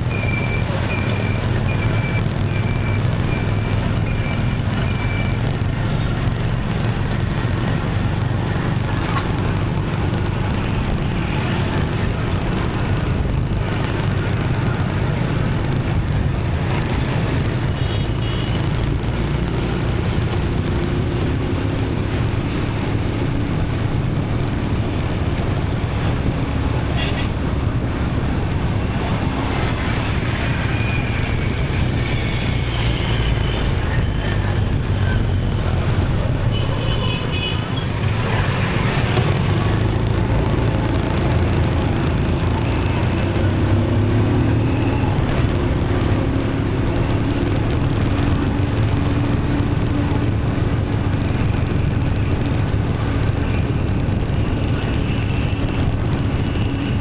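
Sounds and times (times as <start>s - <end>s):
motorbike engine rumble: 0.0s - 57.0s
traffic road noise: 0.0s - 57.0s.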